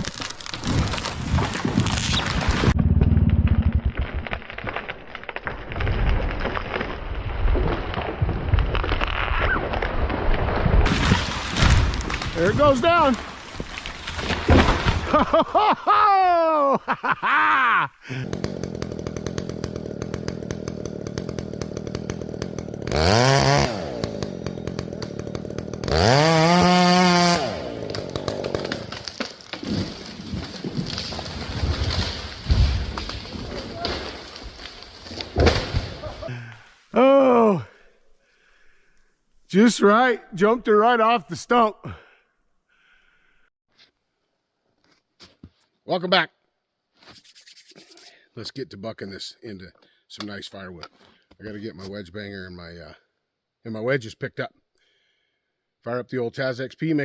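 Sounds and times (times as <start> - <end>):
tree trunk thudding on ground: 0.0 - 15.2, 27.9 - 36.1
branches crackling and snapping: 0.0 - 15.4, 18.4 - 36.9
chainsaw idling and revving: 18.1 - 29.1.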